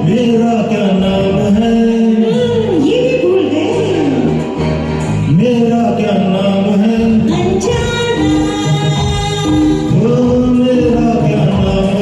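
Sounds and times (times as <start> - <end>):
backing track music: 0.0 - 12.0
person singing: 5.3 - 12.0.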